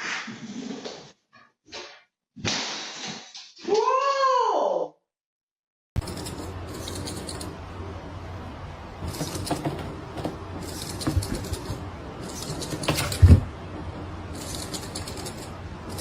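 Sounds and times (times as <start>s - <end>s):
steady low hum: 6.0s - 16.0s
knocks and thumps: 9.0s - 11.8s.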